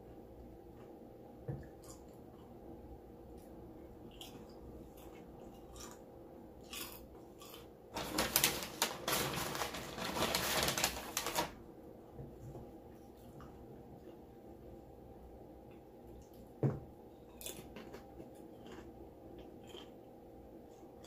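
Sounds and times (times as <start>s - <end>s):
crackling of food being eaten: 1.6s - 2.6s, 3.3s - 11.2s, 15.7s - 21.0s.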